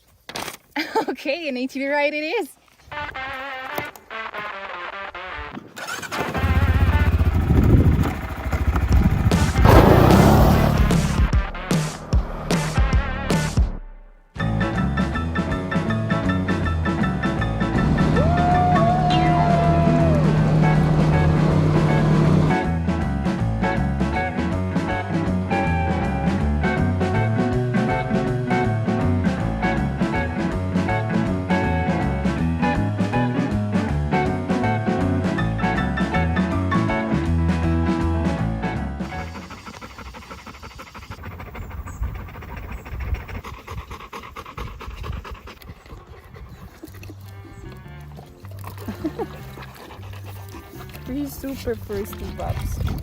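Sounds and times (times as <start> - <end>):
dogs panting: 7.6 - 11.3, 39.0 - 53.0
upbeat swing tune with guitar: 14.4 - 18.1, 20.6 - 39.4.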